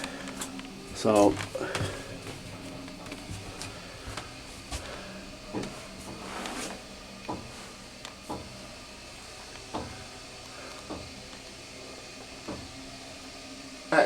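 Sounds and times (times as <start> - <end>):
elevator hum: 0.0 - 14.0
soft knocks: 7.3 - 7.6, 8.2 - 8.6, 9.7 - 10.0, 10.9 - 11.2.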